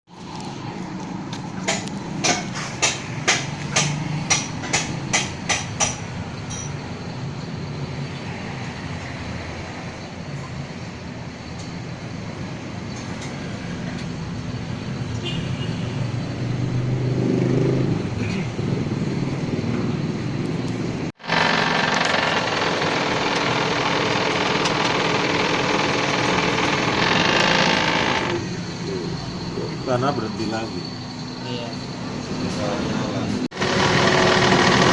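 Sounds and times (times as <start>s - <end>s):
sharp knocks: 21.2s - 28.4s
cooling fan rough growl: 21.2s - 28.6s, 33.5s - 34.9s.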